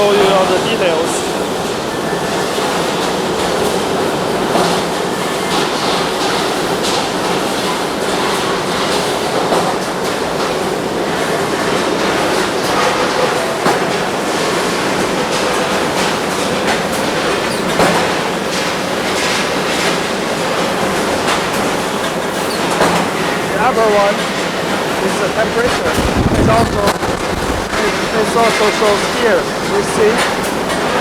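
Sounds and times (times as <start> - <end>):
forging presses clattering: 15.0 - 31.0.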